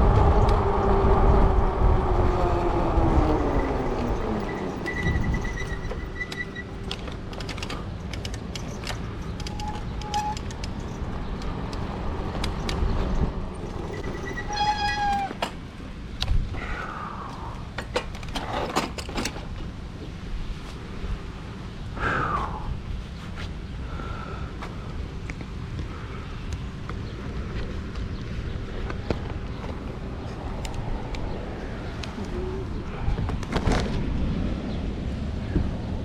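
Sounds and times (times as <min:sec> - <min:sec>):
low rumble: 0:00.0 - 0:18.4
scattered clicks: 0:03.2 - 0:12.9.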